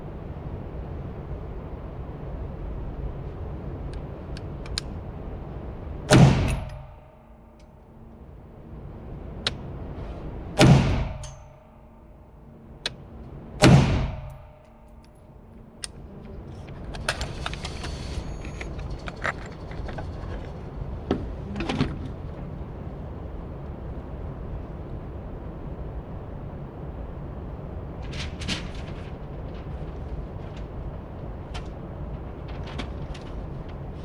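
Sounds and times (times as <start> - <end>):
rifle shots echoing: 10.6 - 11.4, 13.6 - 14.5.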